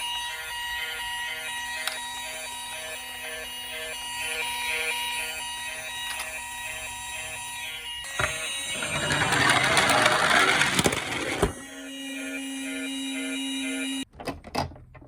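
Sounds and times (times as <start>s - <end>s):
toy siren beeps: 4.2s - 14.1s
plastic toy car rolling rattle: 8.2s - 11.6s.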